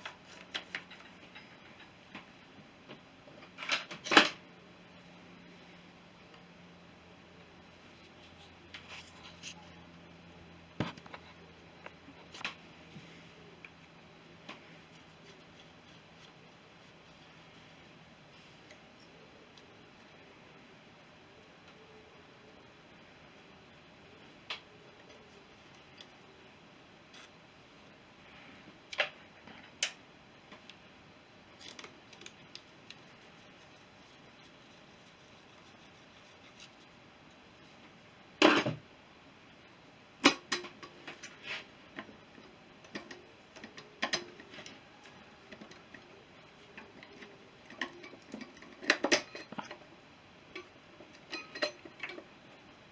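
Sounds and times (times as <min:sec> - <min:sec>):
faint steady hum: 0:00.0 - 0:52.9
hand tools clicking and knocking: 0:50.5 - 0:52.2.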